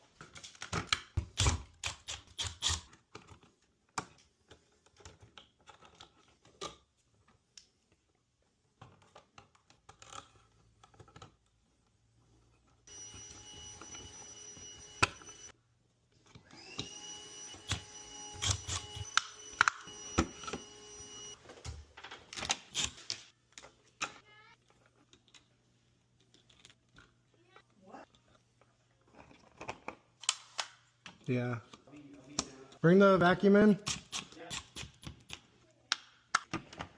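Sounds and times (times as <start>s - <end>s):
small electric power tool whining: 12.9s - 15.6s, 16.3s - 21.4s.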